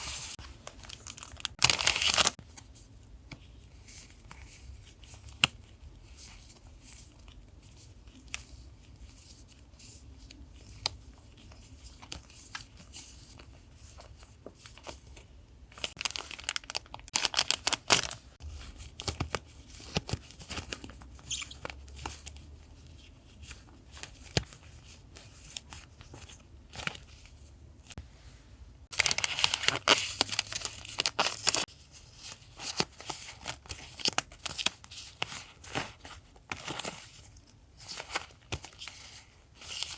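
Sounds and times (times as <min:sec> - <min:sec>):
paper tearing and crinkling: 0:00.0 - 0:02.4.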